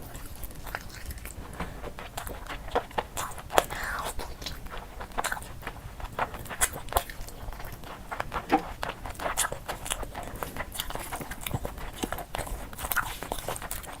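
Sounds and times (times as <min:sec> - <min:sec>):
person chewing food: 0:00.0 - 0:14.0.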